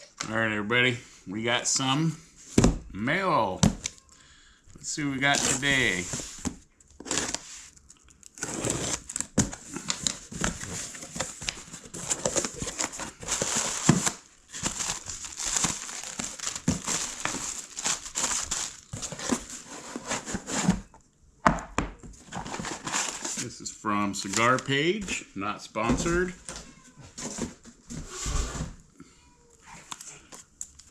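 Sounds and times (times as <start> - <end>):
packaging crinkling and tearing: 6.9 - 20.5.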